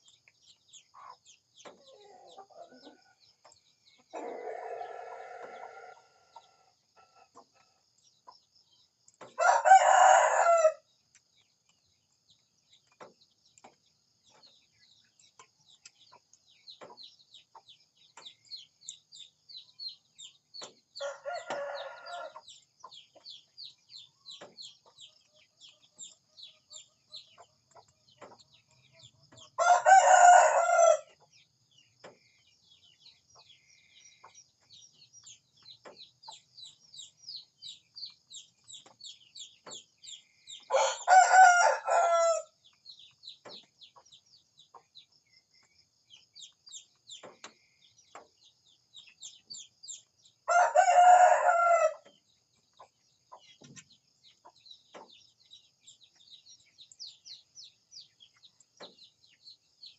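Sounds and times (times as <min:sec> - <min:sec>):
small birds chirping: 0:00.0 - 0:59.9
rooster crowing: 0:04.2 - 0:06.3, 0:09.4 - 0:10.8, 0:21.0 - 0:22.4, 0:29.6 - 0:31.1, 0:40.7 - 0:42.5, 0:50.5 - 0:52.0.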